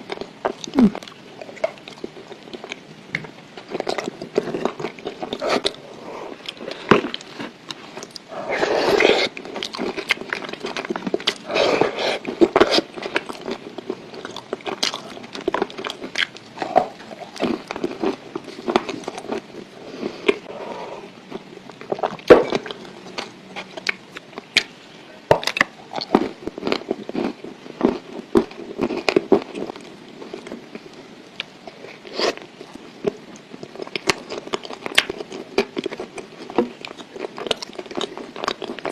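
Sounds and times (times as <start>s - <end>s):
soft wet chewing: 21.1s - 24.7s, 25.4s - 38.9s.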